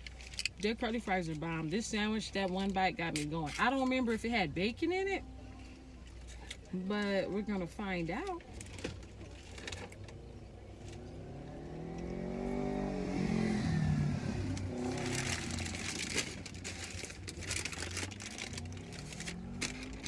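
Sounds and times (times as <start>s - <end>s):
passing car engine: 10.1s - 20.0s
crunchy chewing: 14.5s - 20.0s.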